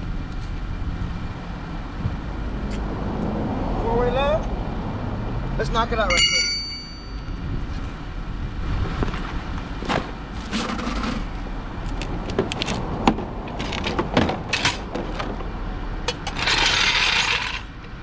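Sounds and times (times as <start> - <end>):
steady low rumble: 4.4 - 16.6
metal tools knocking and clanking: 6.1 - 7.3, 13.6 - 15.3, 16.1 - 17.7.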